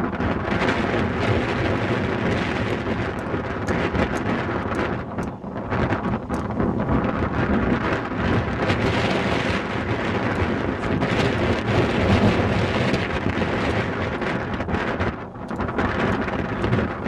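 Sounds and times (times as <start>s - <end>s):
rain: 0.0s - 17.0s
wind buffeting microphone: 0.0s - 17.0s.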